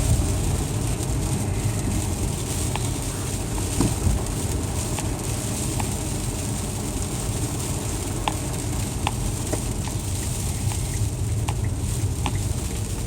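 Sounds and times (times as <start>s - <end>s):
car rumbling inside cabin: 0.0s - 13.0s.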